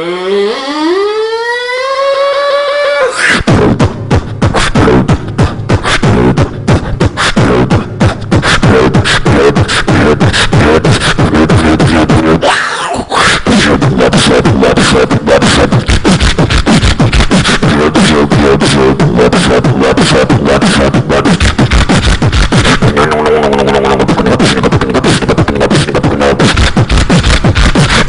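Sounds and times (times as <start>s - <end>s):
beatboxing: 0.0s - 28.0s.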